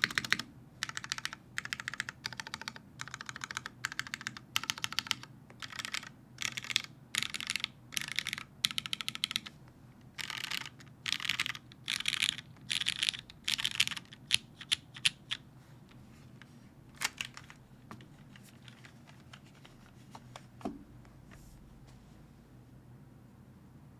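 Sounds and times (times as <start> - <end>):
mechanical keyboard typing: 0.0 - 9.5, 10.2 - 15.4, 17.0 - 17.6.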